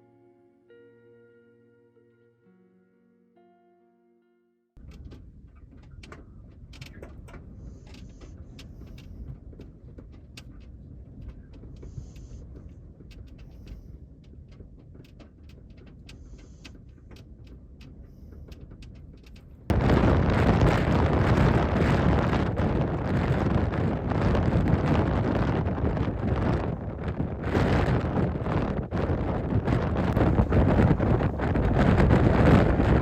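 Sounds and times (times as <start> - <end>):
small ticks and rattles: 4.8 - 19.8
wind blasting onto microphone: 4.8 - 33.0
strong wind blowing: 19.6 - 33.0.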